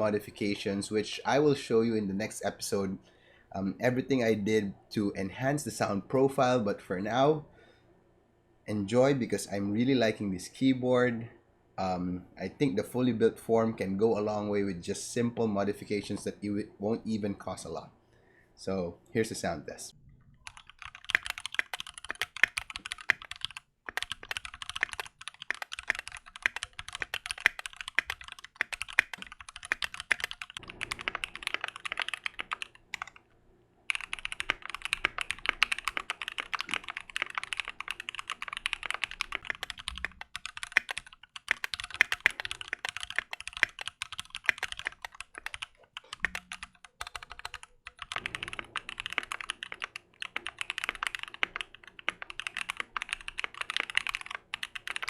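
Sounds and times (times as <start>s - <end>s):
mechanical keyboard typing: 20.4s - 33.2s, 33.9s - 55.0s.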